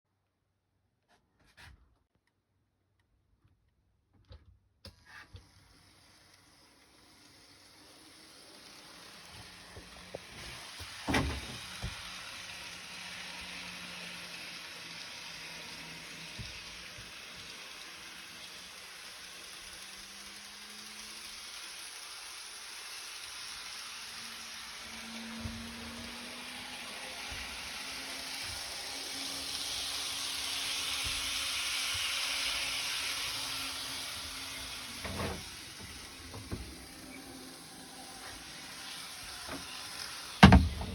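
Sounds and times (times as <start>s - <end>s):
model train rolling on track: 5.4s - 40.9s.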